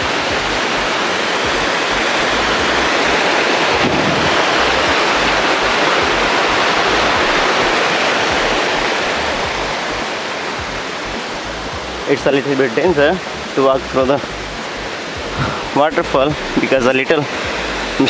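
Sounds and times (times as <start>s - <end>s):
wind buffeting microphone: 3.6s - 5.0s.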